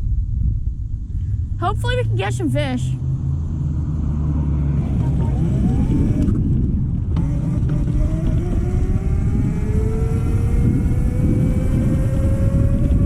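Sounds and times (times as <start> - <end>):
scooter engine accelerating: 3.1 - 13.0.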